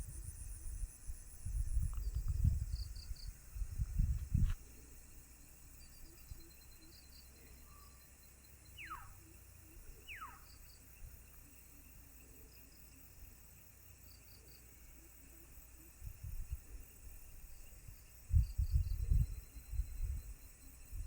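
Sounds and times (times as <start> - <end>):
insect-like chirps: 0.0 - 21.0.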